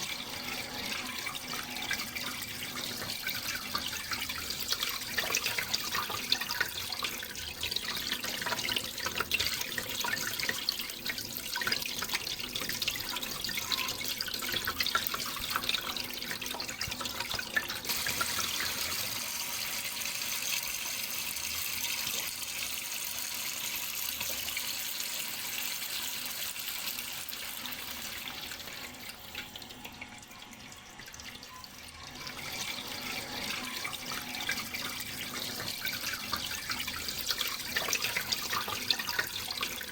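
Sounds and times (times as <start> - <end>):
water running and splashing: 14.4 - 19.8.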